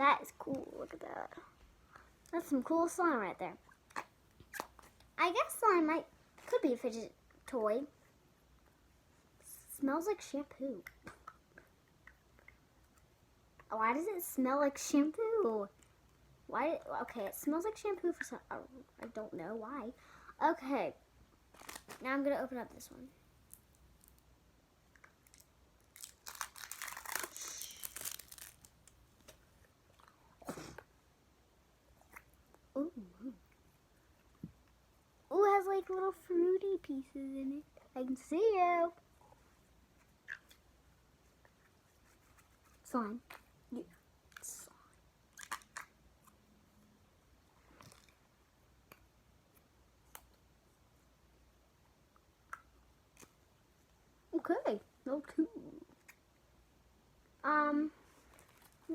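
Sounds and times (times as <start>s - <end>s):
plastic packaging crinkling and tearing: 21.5s - 22.1s, 25.2s - 29.4s, 45.3s - 45.9s.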